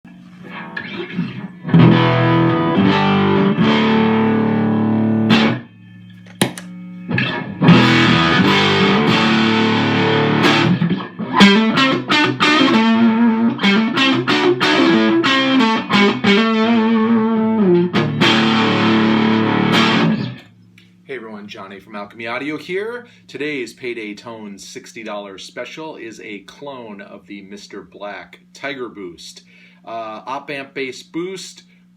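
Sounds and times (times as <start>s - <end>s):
electric guitar with boost pedal: 0.3s - 20.6s.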